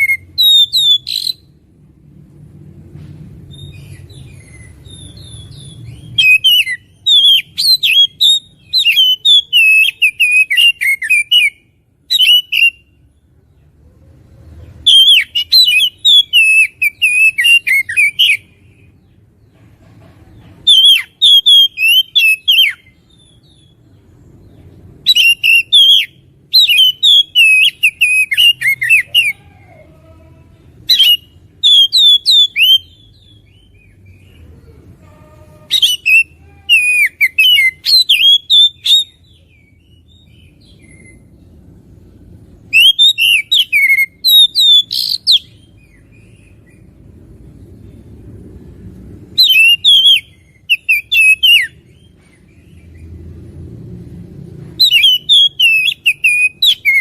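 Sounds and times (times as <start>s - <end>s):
songbird singing whistled notes: 0.0s - 1.6s, 3.5s - 13.1s, 14.8s - 19.0s, 20.6s - 29.4s, 30.8s - 34.5s, 35.6s - 41.6s, 42.6s - 47.0s, 49.3s - 53.2s, 54.7s - 57.0s.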